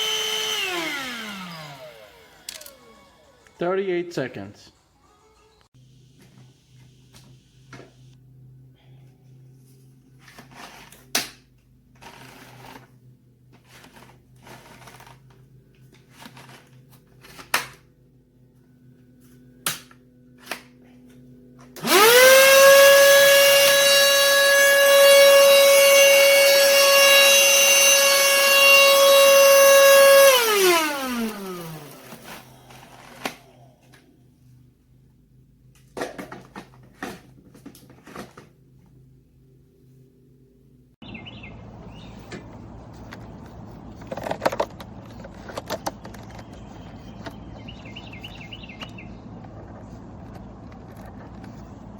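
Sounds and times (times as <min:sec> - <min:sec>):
handheld vacuum motor whine: 0:00.0 - 0:03.6, 0:21.6 - 0:34.0.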